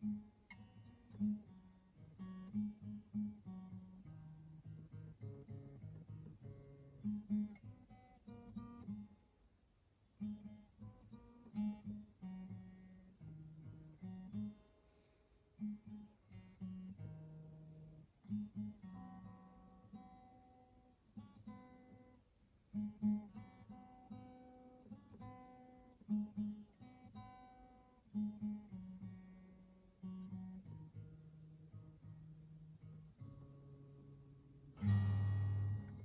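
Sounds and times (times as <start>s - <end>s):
acoustic guitar strumming: 21.2s - 36.0s.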